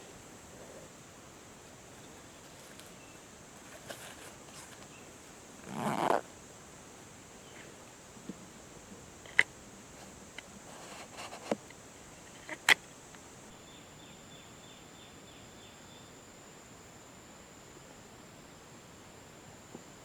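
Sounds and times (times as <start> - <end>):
high insect buzz: 0.0 - 20.0
rustling: 1.6 - 5.0, 10.0 - 12.8.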